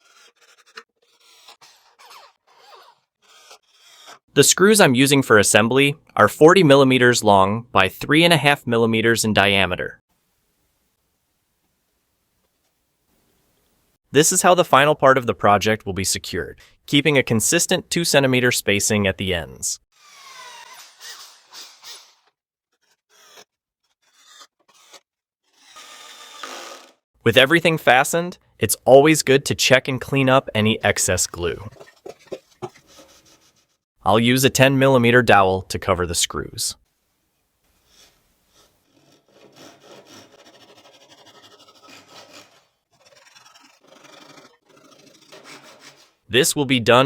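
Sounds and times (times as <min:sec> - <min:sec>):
hand saw cutting wood: 0:00.0 - 0:04.3, 0:19.9 - 0:27.0, 0:38.5 - 0:46.2.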